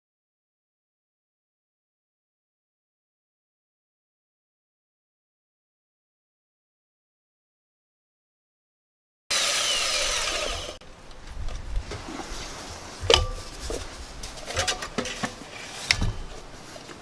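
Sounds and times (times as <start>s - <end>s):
saw cutting: 9.3s - 10.8s.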